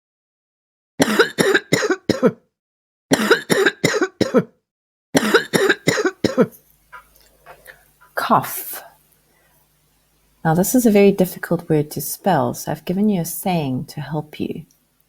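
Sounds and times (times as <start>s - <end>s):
person coughing: 1.0s - 2.4s, 3.1s - 4.6s, 5.2s - 6.6s.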